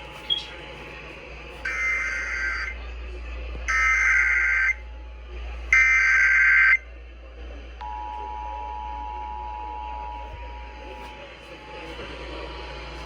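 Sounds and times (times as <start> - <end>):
warbling digital data tones: 1.7 - 2.8, 3.7 - 4.8.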